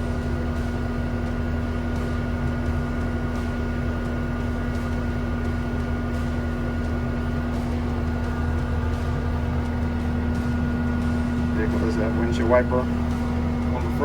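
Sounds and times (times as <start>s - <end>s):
diesel engine rumbling: 0.0s - 14.0s
higher steady tone: 7.4s - 14.0s.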